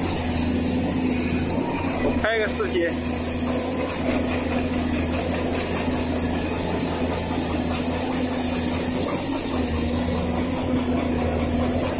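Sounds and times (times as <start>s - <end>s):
excavator diesel engine running: 0.0s - 11.9s.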